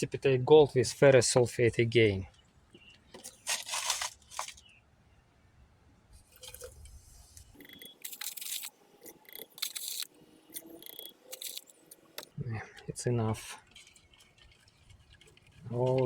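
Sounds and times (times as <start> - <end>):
faint liquid sounds: 6.3 - 16.0.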